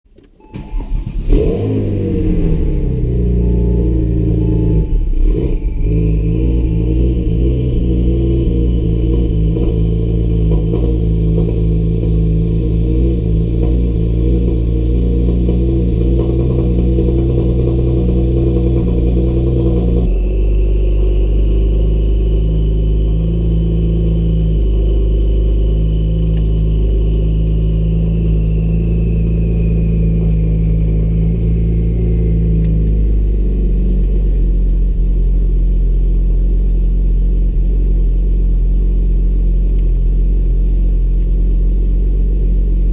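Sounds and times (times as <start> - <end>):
car engine droning: 0.1 - 42.9
faint high whine: 1.8 - 10.1, 19.7 - 32.8.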